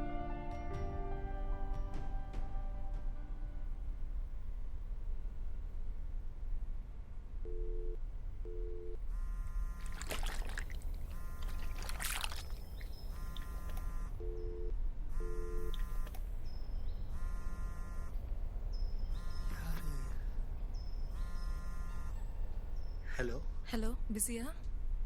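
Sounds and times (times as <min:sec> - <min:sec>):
short low beeps: 0:07.4 - 0:10.3, 0:11.0 - 0:23.1.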